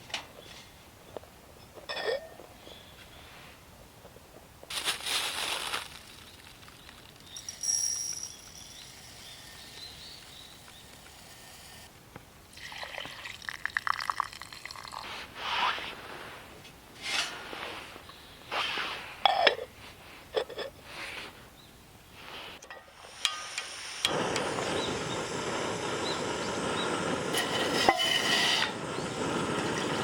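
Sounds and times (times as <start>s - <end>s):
liquid being poured: 12.6s - 15.1s.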